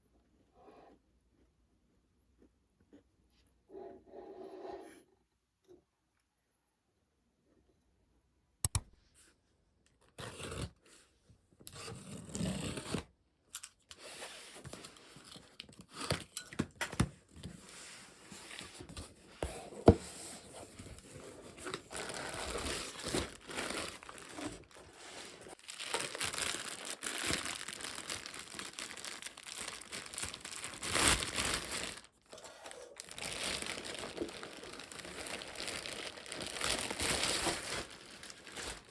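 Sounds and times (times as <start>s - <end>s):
sharp clicks: 8.6s - 8.9s
wrapping torn and crinkled: 21.6s - 38.9s.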